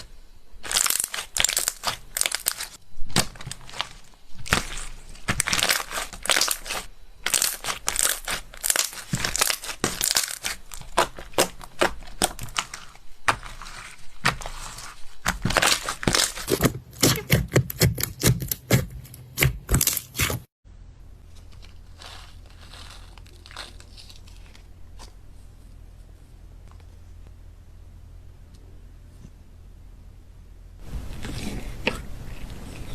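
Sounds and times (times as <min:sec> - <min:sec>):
slime crackling and popping: 0:00.6 - 0:20.4, 0:21.6 - 0:24.7.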